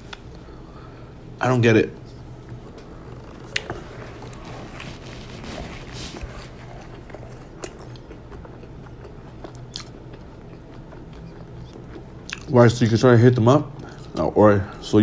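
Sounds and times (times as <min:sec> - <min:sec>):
person chewing food: 0:02.8 - 0:12.5.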